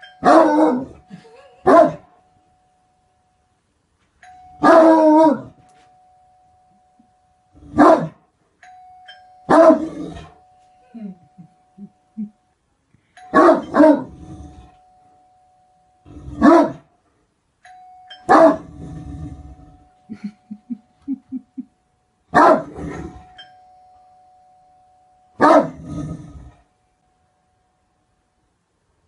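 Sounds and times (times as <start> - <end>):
thin steady tone: 0.0 - 29.0
dog barking: 1.7 - 2.1, 7.8 - 8.2, 9.5 - 9.9, 13.4 - 14.1, 16.4 - 16.8, 18.3 - 18.6, 22.4 - 22.8, 25.4 - 25.8.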